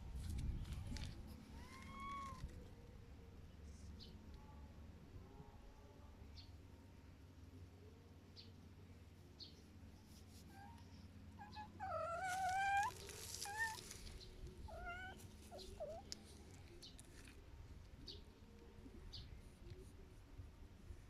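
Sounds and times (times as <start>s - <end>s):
cat meowing: 1.5s - 2.5s, 14.7s - 16.0s.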